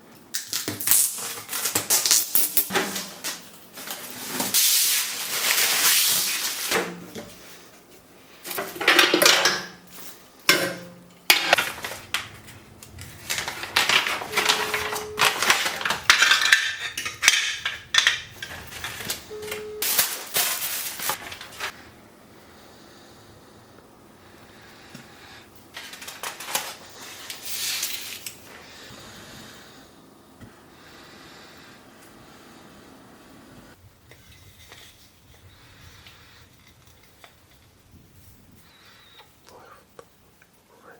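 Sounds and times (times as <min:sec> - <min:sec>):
metal and plastic parts clattering: 0:08.5 - 0:12.3, 0:13.1 - 0:21.8, 0:25.7 - 0:28.4.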